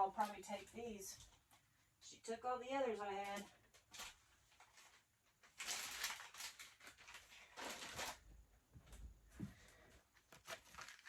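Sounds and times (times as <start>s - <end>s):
packaging rustling: 3.8s - 8.3s, 10.2s - 11.0s.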